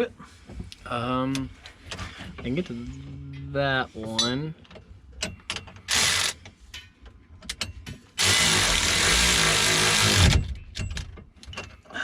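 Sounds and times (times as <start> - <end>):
clicks of tool and hardware: 4.1 - 8.0
cordless power tool whine: 5.9 - 6.4, 8.2 - 10.4.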